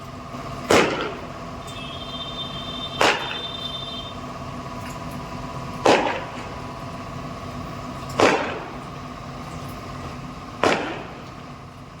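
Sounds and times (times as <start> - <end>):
steady hum of held tones: 0.0 - 12.0
firework bursts: 0.7 - 4.1.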